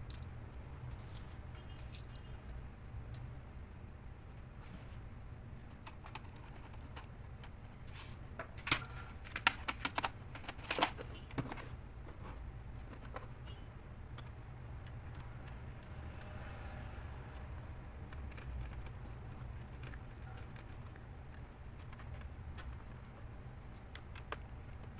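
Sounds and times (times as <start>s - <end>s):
clicks of small hard parts: 8.4s - 11.7s.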